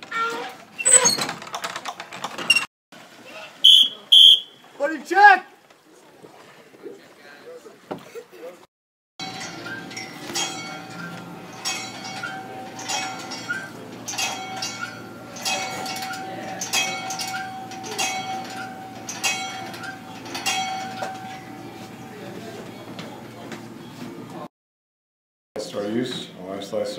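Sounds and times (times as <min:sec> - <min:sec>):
metal bell ringing: 0:09.2 - 0:21.8.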